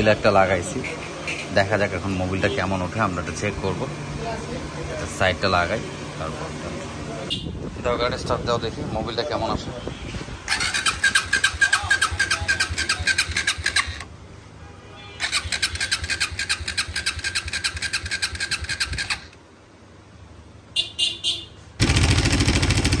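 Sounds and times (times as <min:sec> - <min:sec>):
motorcycle starter cranking: 0:10.5 - 0:14.1, 0:15.2 - 0:19.4
motorcycle engine running: 0:21.8 - 0:23.0.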